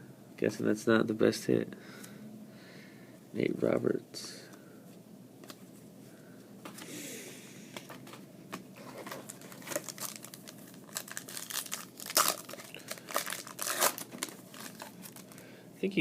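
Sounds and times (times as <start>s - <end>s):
wrapper tearing and crinkling: 9.0s - 15.4s.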